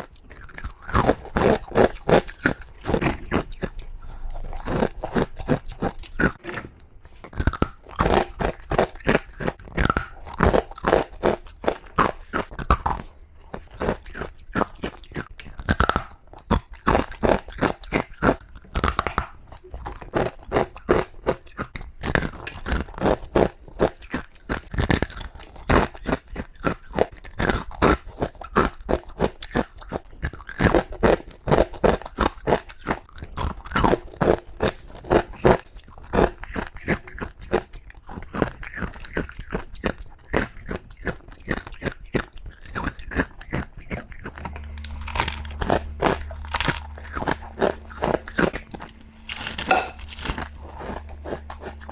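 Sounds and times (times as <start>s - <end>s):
low steady hum: 0.1s - 16.3s, 43.8s - 51.9s
person crunching ice: 44.0s - 51.9s.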